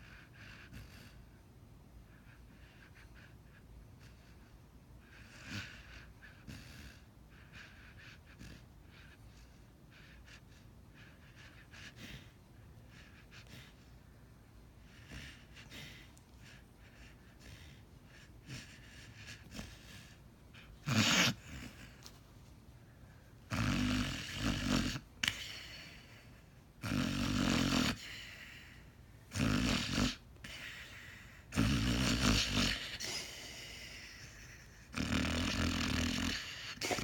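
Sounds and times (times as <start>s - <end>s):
dog snoring: 2.1s - 13.8s, 14.8s - 22.1s, 23.5s - 26.2s, 26.8s - 37.0s
dog snorting: 14.8s - 22.2s, 23.5s - 26.2s, 26.8s - 28.6s, 29.3s - 37.0s.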